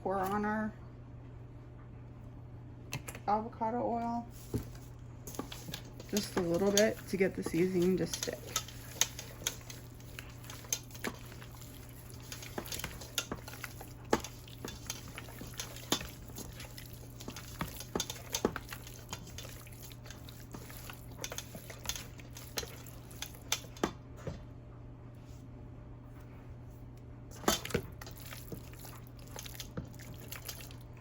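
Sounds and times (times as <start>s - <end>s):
steady low hum: 0.0s - 31.0s
utensil scraping a baking sheet: 5.3s - 21.9s.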